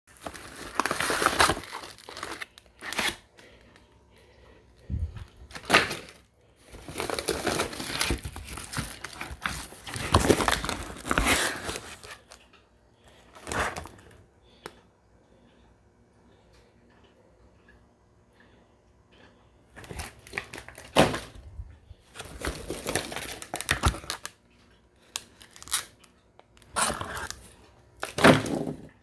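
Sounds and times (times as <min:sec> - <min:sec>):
packaging crinkling and tearing: 0:00.1 - 0:03.8, 0:05.1 - 0:12.4, 0:19.8 - 0:21.4, 0:22.1 - 0:24.4, 0:25.0 - 0:28.9.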